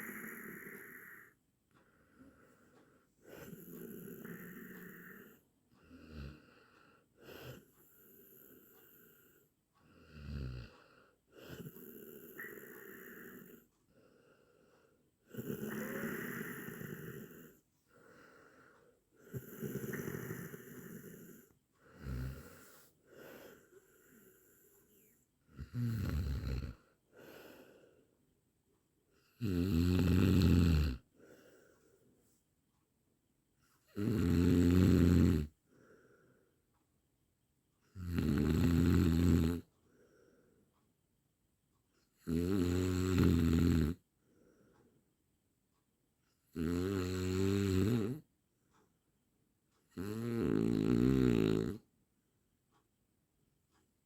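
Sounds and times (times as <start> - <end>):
person snoring: 0.0 - 1.4, 3.2 - 9.4, 10.0 - 13.7, 15.3 - 27.8, 29.3 - 31.7, 33.8 - 35.6, 37.9 - 39.7, 42.2 - 44.0, 46.5 - 48.2, 50.0 - 51.8.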